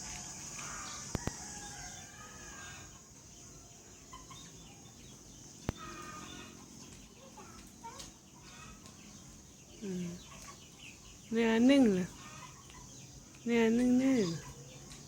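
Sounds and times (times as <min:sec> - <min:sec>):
high insect drone: 0:00.0 - 0:06.6
chickens clucking: 0:00.0 - 0:15.0.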